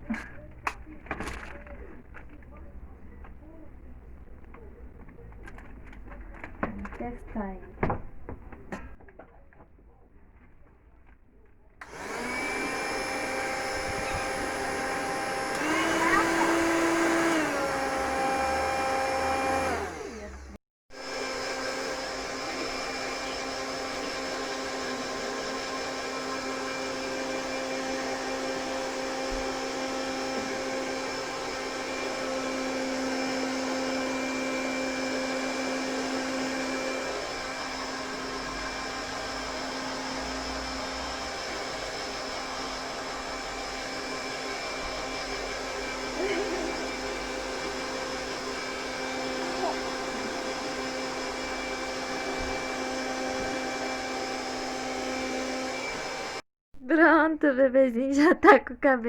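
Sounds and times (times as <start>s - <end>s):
hair dryer running: 11.8s - 56.4s.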